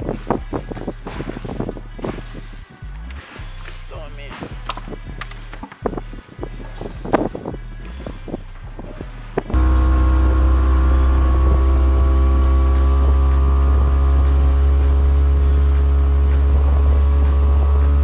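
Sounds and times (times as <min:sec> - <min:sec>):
boat motor running: 0:09.6 - 0:18.0.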